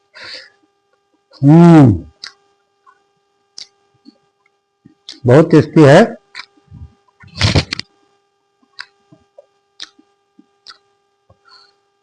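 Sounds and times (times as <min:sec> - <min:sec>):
faint electrical hum: 0:00.0 - 0:12.0.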